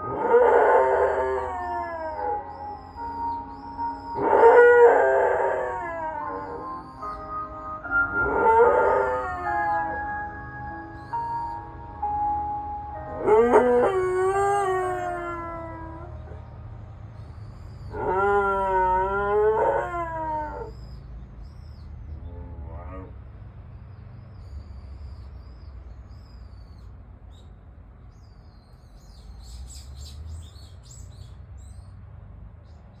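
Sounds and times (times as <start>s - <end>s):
dog howling: 0.0s - 3.2s, 4.2s - 6.8s, 8.0s - 10.1s, 13.2s - 16.4s, 17.9s - 20.8s.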